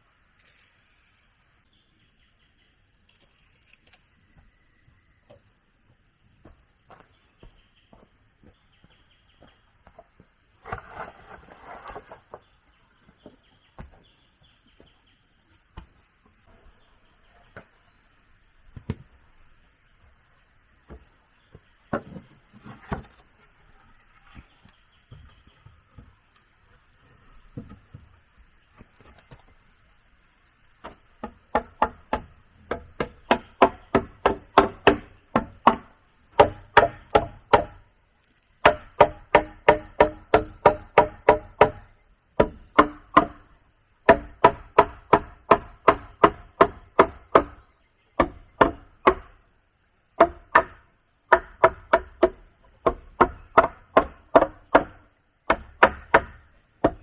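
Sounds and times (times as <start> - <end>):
faint birdsong: 0.0 - 57.0
metal tool striking wood: 30.8 - 37.8, 38.6 - 43.5, 44.1 - 47.6, 50.2 - 57.0.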